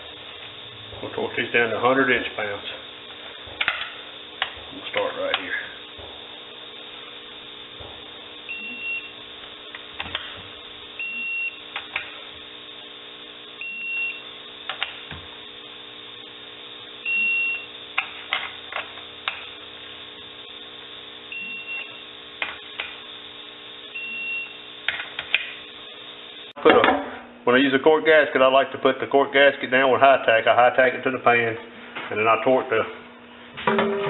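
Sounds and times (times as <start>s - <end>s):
torque wrench beeps: 8.5s - 9.2s, 11.0s - 11.8s, 13.6s - 14.8s, 17.0s - 18.1s, 21.3s - 22.1s, 23.9s - 24.7s.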